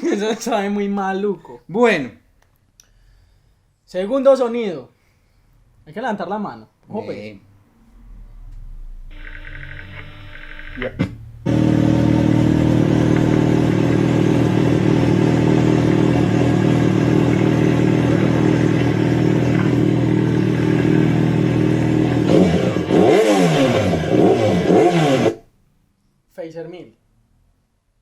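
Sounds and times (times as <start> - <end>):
motorcycle engine idling and revving: 11.0 - 25.4.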